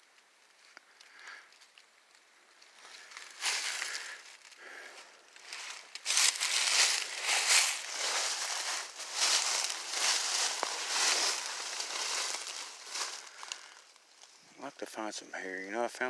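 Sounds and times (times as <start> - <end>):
footsteps crunching through dry leaves: 2.7 - 14.4.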